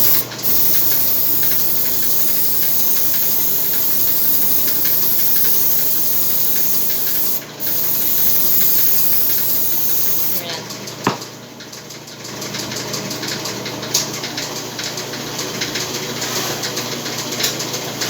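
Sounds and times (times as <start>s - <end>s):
aerosol cooking spray hissing: 0.0s - 10.4s.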